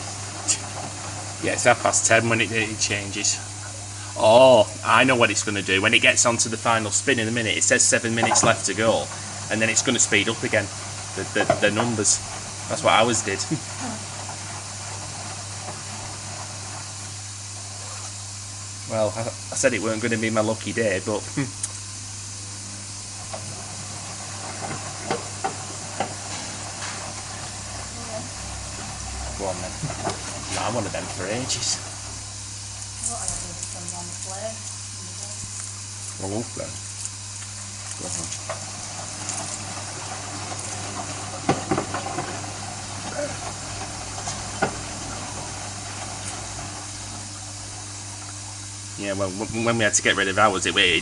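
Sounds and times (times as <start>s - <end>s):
washing machine humming: 0.0s - 51.0s
sharp knocks in washing machine: 44.0s - 44.9s.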